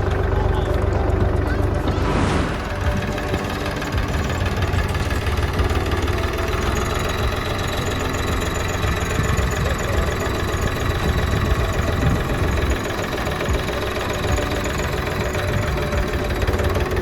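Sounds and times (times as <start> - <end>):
tractor diesel engine running: 0.0 - 17.0.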